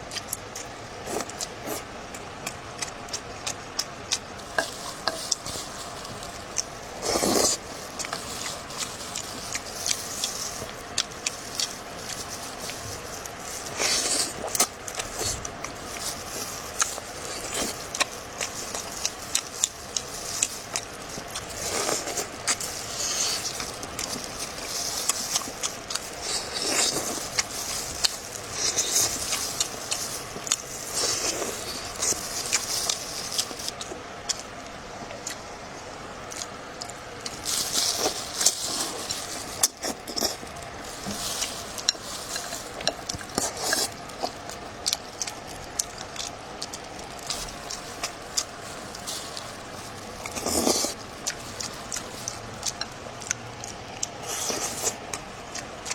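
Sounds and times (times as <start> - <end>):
wet chewing and slurping: 0.0 - 35.5, 36.3 - 55.9.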